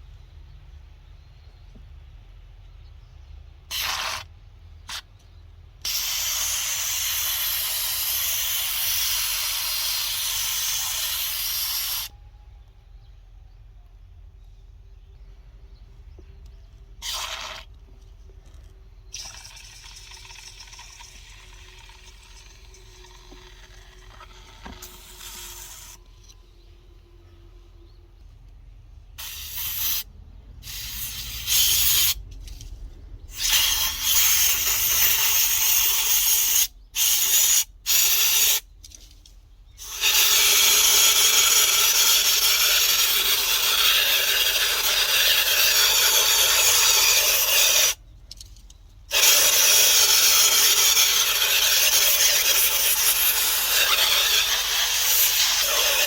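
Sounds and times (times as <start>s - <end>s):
high-pressure spray hissing: 3.7s - 4.2s, 5.9s - 12.1s, 24.8s - 26.0s, 29.2s - 32.2s, 33.3s - 38.6s, 39.8s - 48.0s, 49.1s - 56.0s.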